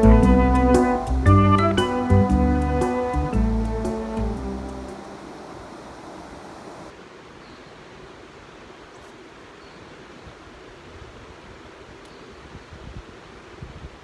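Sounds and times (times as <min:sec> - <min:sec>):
background music: 0:00.0 - 0:05.3
steady rushing outdoor noise: 0:00.0 - 0:07.1.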